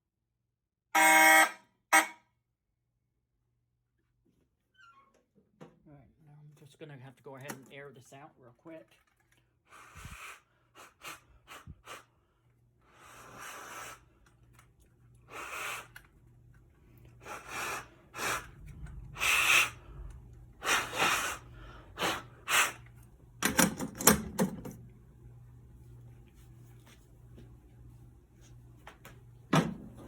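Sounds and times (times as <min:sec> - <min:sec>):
puffs of blown air: 0:09.7 - 0:14.2, 0:15.2 - 0:16.0, 0:17.2 - 0:22.9.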